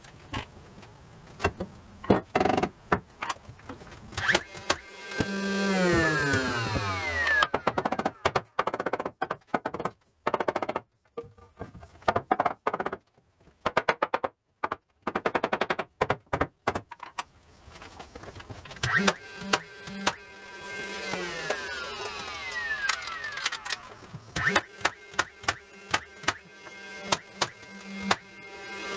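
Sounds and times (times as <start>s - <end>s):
impact driver rapid hammering clicks: 22.1s - 26.4s.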